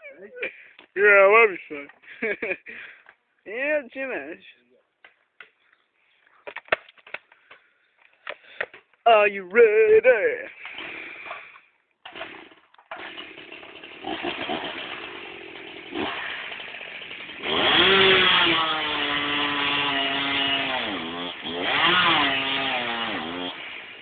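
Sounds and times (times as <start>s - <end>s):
chainsaw revving: 10.6s - 24.0s.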